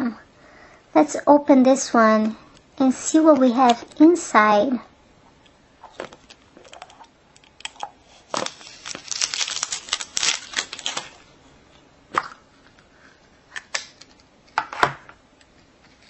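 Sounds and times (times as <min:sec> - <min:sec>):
plastic seal crinkling: 0:05.9 - 0:11.3.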